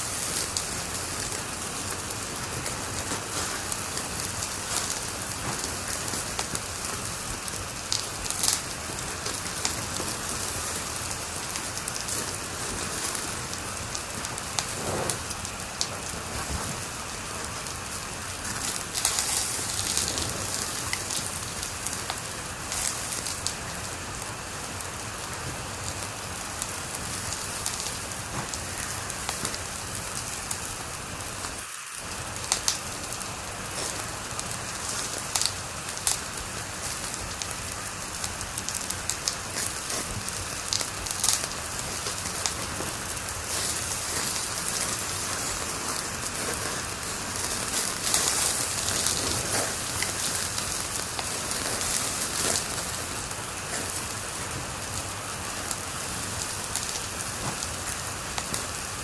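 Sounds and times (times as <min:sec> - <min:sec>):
loud fire pops: 0:00.0 - 0:59.0
wood fire crackling: 0:00.0 - 0:59.0.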